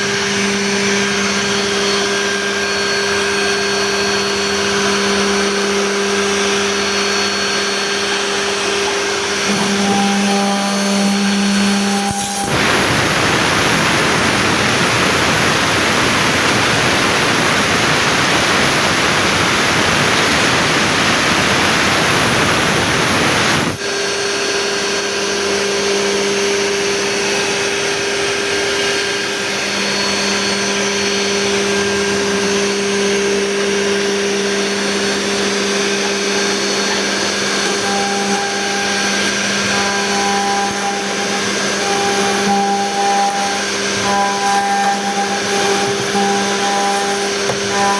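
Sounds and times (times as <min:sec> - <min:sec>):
router spindle cutting wood: 0:00.0 - 0:26.0, 0:26.8 - 0:47.9
machine hum with held tones: 0:00.0 - 0:47.9
pulsing tone: 0:09.4 - 0:23.9.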